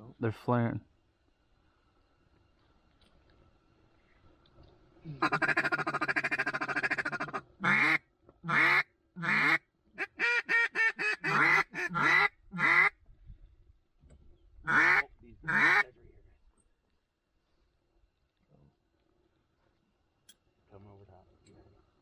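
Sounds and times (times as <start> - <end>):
duck call chatter: 5.2 - 12.9, 14.7 - 15.8
duck call quacks: 5.2 - 12.9, 14.7 - 15.9.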